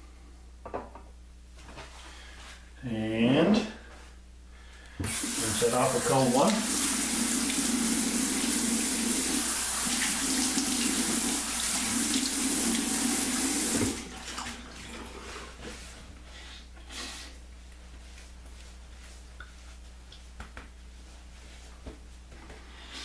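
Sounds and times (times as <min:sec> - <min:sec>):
tap water running into sink: 0:05.0 - 0:14.8.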